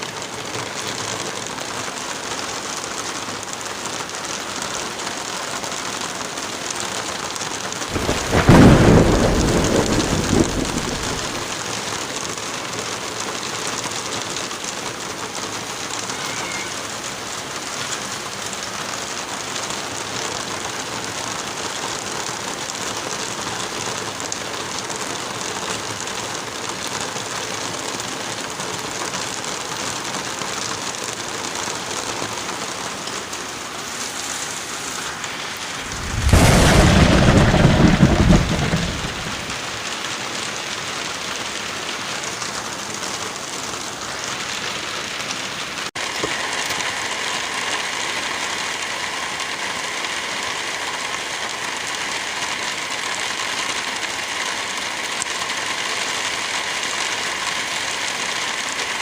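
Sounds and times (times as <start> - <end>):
wind in a forest: 0.0 - 16.1, 16.7 - 59.0
rain: 0.0 - 59.0
loud low rumble: 35.8 - 39.6.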